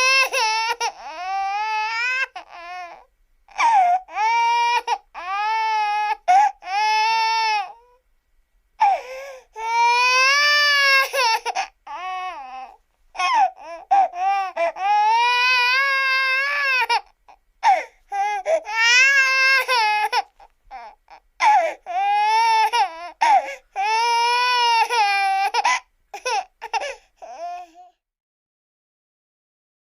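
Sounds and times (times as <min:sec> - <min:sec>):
baby crying: 0:00.0 - 0:08.0, 0:08.8 - 0:28.0.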